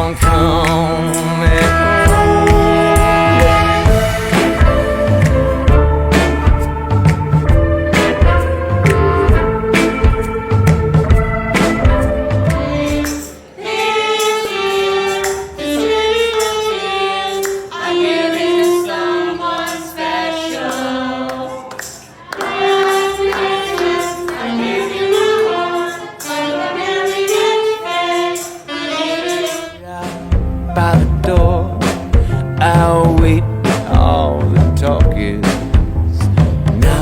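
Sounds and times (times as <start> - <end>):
voices singing in harmony: 0.0 - 32.1, 36.7 - 37.0
light musical accompaniment: 0.0 - 37.0.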